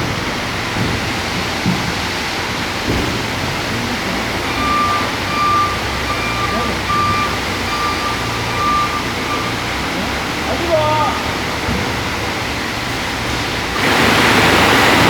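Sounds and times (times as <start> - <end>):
forklift engine running: 0.0 - 15.0
reversing alarm beeping: 3.7 - 11.5.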